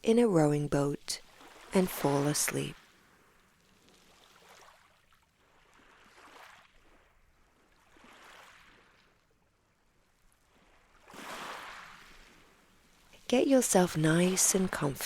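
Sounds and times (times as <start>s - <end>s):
ocean waves washing in: 0.4s - 3.5s, 10.4s - 15.0s.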